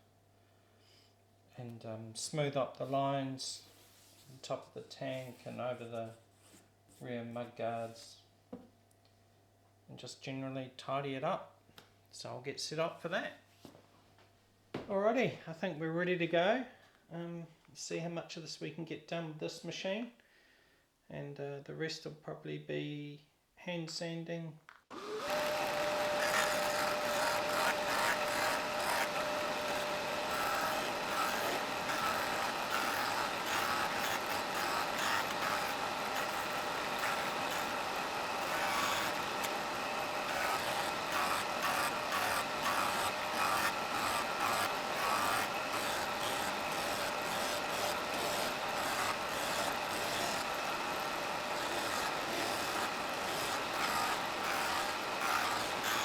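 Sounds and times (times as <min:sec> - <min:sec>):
electric sander motor hum: 0:24.9 - 0:56.0
wood scratching on abrasive: 0:25.2 - 0:56.0.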